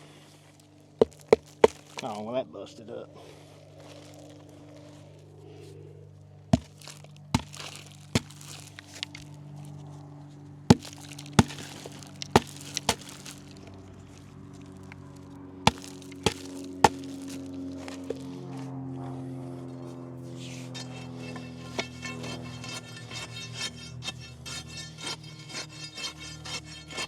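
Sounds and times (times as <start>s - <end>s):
concrete lumps cracking when struck: 1.0s - 2.2s, 6.6s - 9.3s, 10.7s - 13.7s, 15.7s - 18.2s.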